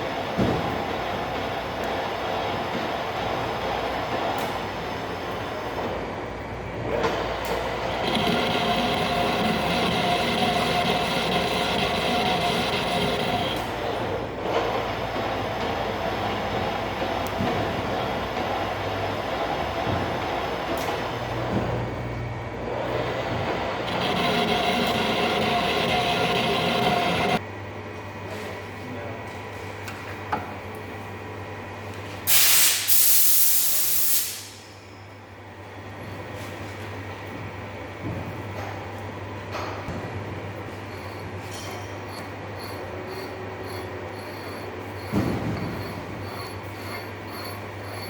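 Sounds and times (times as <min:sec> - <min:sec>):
steady low hum: 0:05.8 - 0:14.5, 0:21.4 - 0:28.3, 0:39.1 - 0:48.0
metal lathe whirring: 0:07.3 - 0:21.4, 0:22.9 - 0:27.4, 0:40.5 - 0:48.0
air jet hissing blasts: 0:08.0 - 0:13.7, 0:23.8 - 0:27.4, 0:32.3 - 0:34.7.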